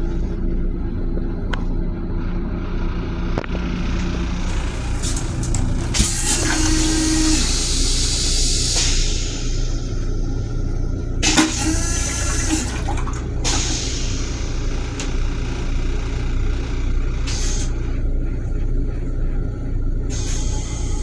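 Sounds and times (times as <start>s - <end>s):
railcar low rumble: 0.0s - 21.0s
toilet flushing water and air: 3.4s - 16.5s, 20.1s - 21.0s
toilet flush click: 4.0s - 9.9s, 11.2s - 15.2s.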